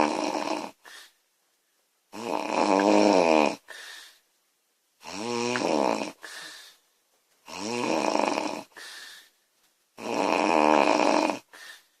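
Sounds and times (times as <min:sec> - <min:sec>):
woman snoring: 0:00.0 - 0:00.9, 0:02.1 - 0:03.7, 0:05.0 - 0:06.4, 0:07.4 - 0:08.8, 0:10.0 - 0:11.7.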